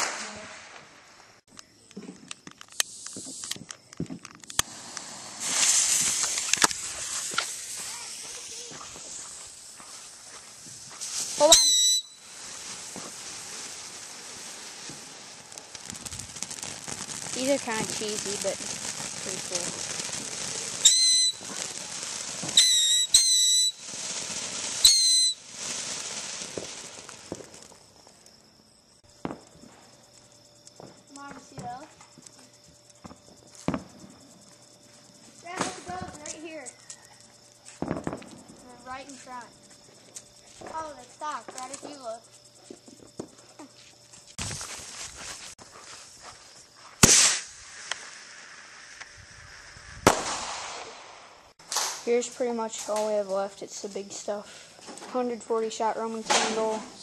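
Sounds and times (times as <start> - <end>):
sharp pop: 0.0 - 0.9, 47.0 - 48.0, 50.0 - 52.1
firework hissing: 0.0 - 1.5, 2.4 - 57.0
firework pops and clicks: 1.5 - 14.0, 14.7 - 28.4, 29.2 - 34.0, 35.4 - 39.4, 40.1 - 43.4, 47.0 - 48.2, 50.0 - 53.3, 56.2 - 57.0.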